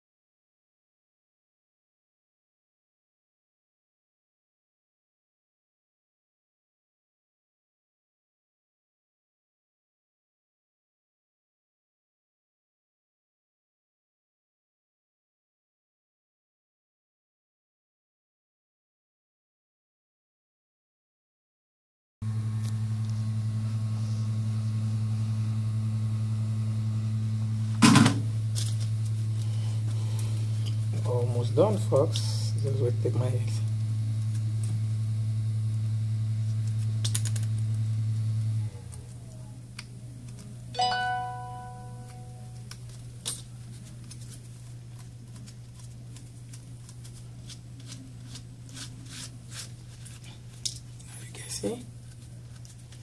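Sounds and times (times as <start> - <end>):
low electrical hum: 22.3 - 53.0.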